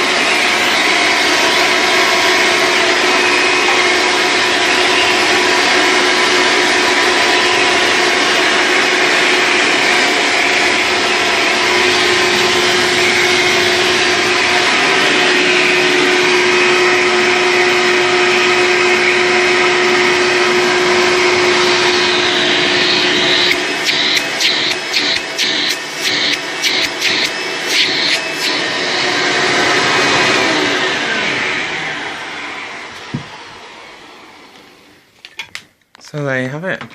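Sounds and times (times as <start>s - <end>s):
vacuum cleaner running: 0.0s - 35.2s
whistling tone: 4.6s - 5.5s, 22.0s - 28.6s.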